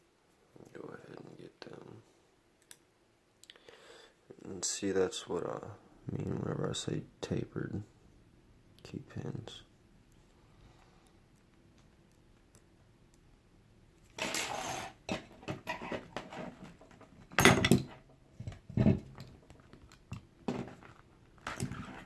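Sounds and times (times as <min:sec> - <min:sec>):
metal parts scraping: 0:14.2 - 0:18.0.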